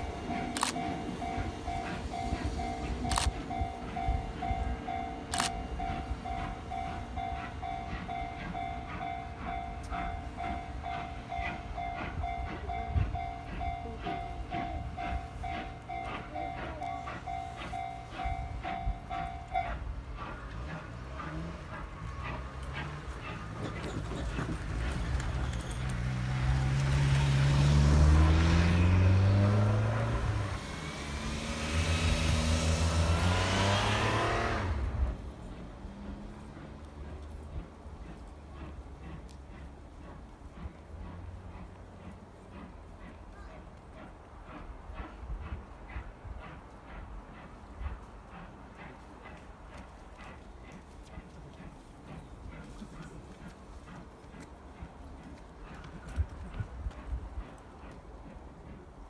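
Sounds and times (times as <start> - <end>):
train wheels clacking on rails: 0.0 - 59.0
car engine accelerating: 25.1 - 35.2.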